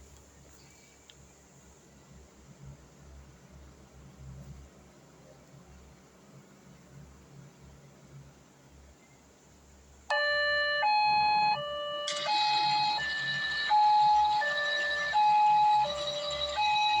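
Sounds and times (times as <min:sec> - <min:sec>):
toy train electronic two-tone siren: 0:10.1 - 0:17.0.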